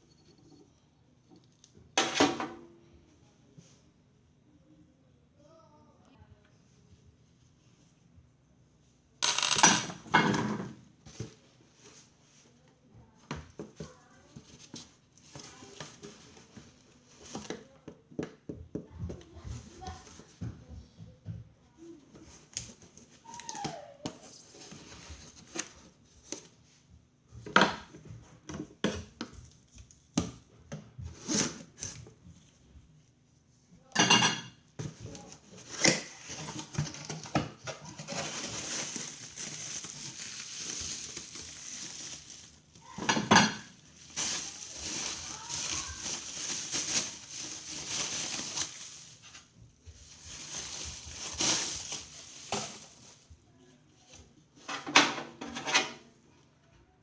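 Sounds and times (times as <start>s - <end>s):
scraping and rustling: 9.2s - 17.8s, 31.0s - 32.6s, 34.8s - 53.4s.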